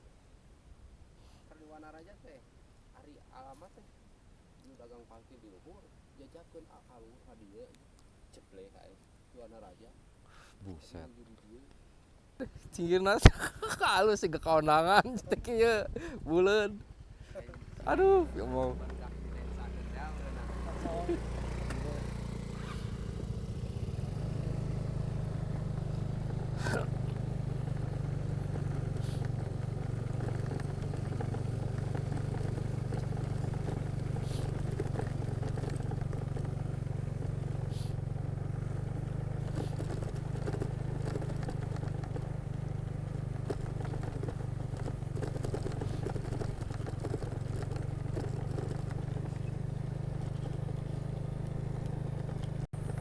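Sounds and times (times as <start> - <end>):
road noise: 12.7 - 53.0
vehicle engine drone: 14.8 - 53.0.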